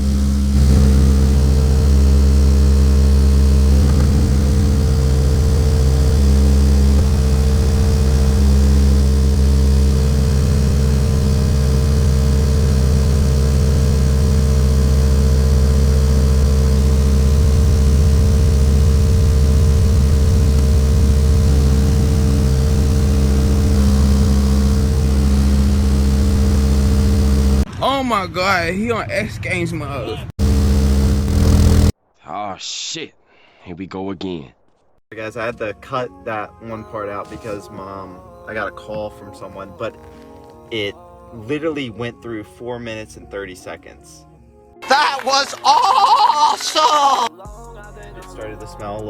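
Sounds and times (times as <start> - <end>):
subwoofer low test tone hum: 0.0 - 27.7, 30.4 - 31.9.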